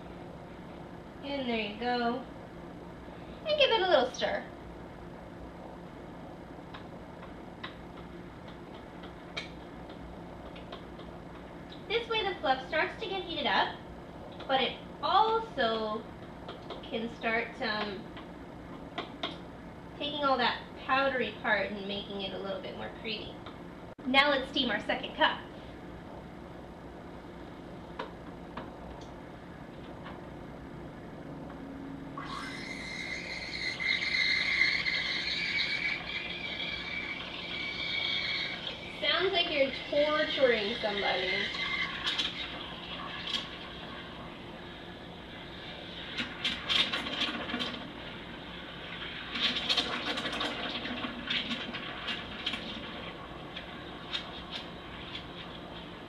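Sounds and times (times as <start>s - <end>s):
milk steamer screeching: 32.2s - 44.2s.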